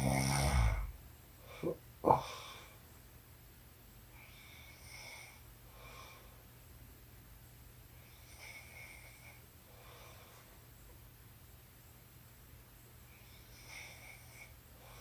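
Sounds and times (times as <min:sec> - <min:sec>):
woman snoring softly: 0:00.0 - 0:01.0, 0:13.2 - 0:15.0
steady low hum: 0:00.0 - 0:15.0.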